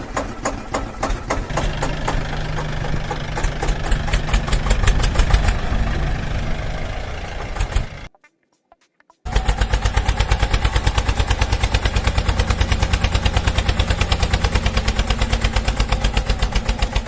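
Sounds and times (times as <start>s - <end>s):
engine running with rapid knocking: 0.0s - 8.1s, 9.3s - 17.0s
steady low hum: 1.5s - 8.1s.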